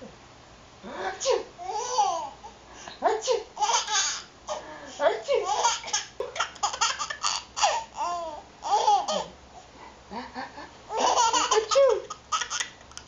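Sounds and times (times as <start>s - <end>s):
baby laughing: 1.6s - 2.4s, 3.6s - 4.6s, 5.4s - 9.3s, 10.9s - 13.0s.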